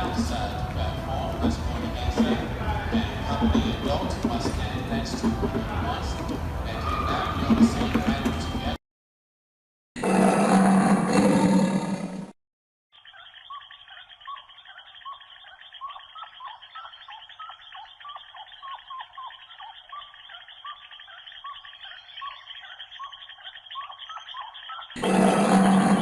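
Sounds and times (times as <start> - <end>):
animal chirping calls: 12.9 - 26.0.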